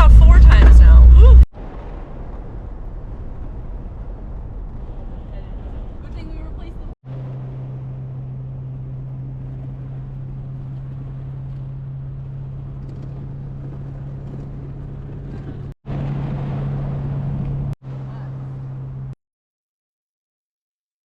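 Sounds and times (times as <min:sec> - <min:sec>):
van engine droning: 0:00.0 - 0:01.5, 0:07.1 - 0:19.2
road noise: 0:00.0 - 0:19.2.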